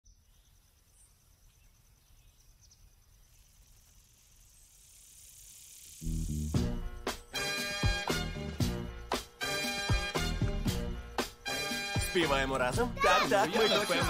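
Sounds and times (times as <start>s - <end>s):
insects chirring: 0.1s - 7.8s
hiss: 3.3s - 7.6s
loud music: 6.5s - 14.0s.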